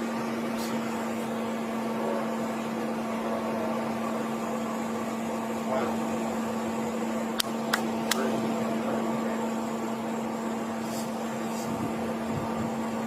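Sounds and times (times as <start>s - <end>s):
mechanical hum: 0.0s - 13.0s
sharp clicks: 7.4s - 8.3s.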